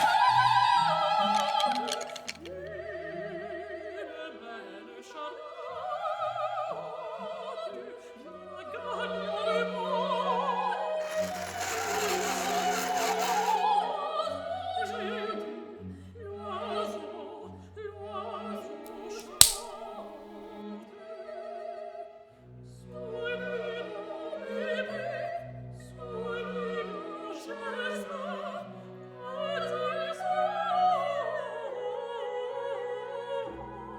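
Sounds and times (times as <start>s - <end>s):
sharp crack: 18.9s - 20.1s.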